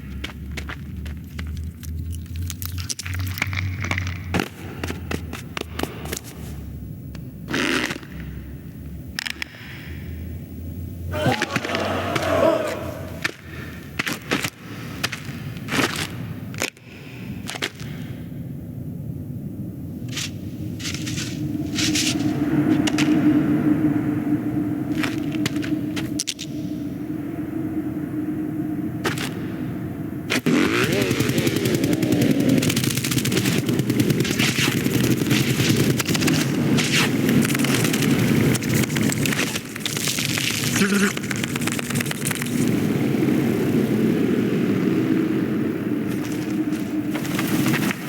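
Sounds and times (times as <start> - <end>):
steady low rumble: 0.0 - 14.8, 18.1 - 30.5
short pitched cry: 11.1 - 13.2
sharp cracks: 11.2 - 16.8.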